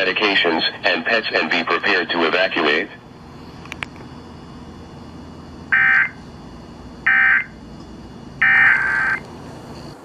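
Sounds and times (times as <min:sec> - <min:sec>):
digital data tone bursts: 0:05.7 - 0:06.2, 0:07.0 - 0:07.6, 0:08.4 - 0:09.2.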